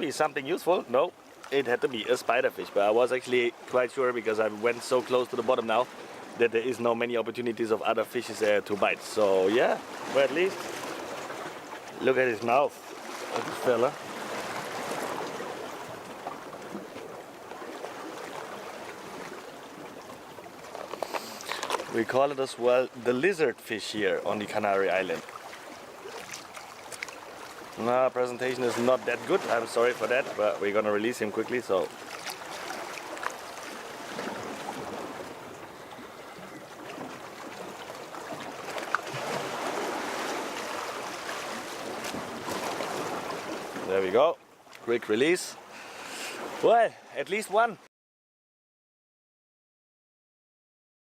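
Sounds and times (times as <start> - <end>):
sea water washing against rocks: 8.2 - 23.3, 24.1 - 44.2.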